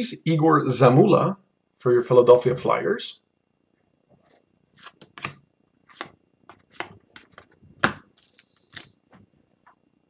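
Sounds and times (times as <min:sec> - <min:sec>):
cards sliding and flipping: 0:04.2 - 0:08.9.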